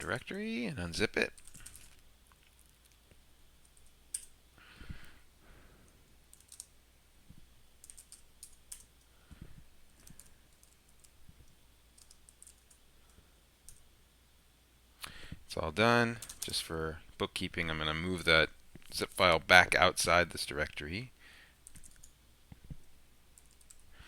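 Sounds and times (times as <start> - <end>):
keystrokes on computer keyboard: 1.4 - 3.0, 6.3 - 6.7, 7.8 - 9.1, 10.0 - 13.8, 16.2 - 16.6, 21.6 - 22.2, 23.4 - 23.9.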